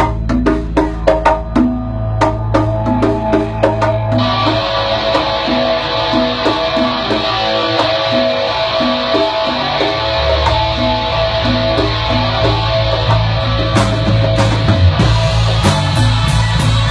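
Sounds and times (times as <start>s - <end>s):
electric guitar riff: 0.0s - 16.9s
rock band playing: 0.0s - 16.9s.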